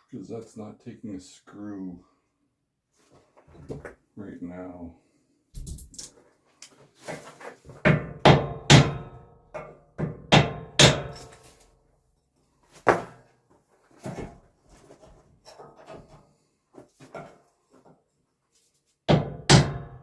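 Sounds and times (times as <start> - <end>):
hammer striking wood: 7.8 - 11.2, 19.1 - 20.0.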